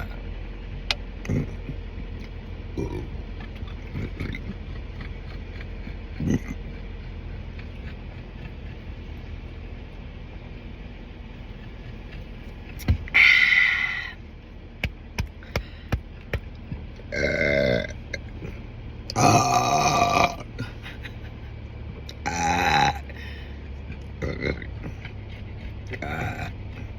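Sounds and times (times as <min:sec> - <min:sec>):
man burping: 0:01.2 - 0:01.8, 0:02.8 - 0:04.6, 0:06.1 - 0:06.7, 0:17.1 - 0:18.2, 0:19.1 - 0:20.8, 0:22.2 - 0:23.2, 0:24.2 - 0:25.0, 0:25.9 - 0:26.6.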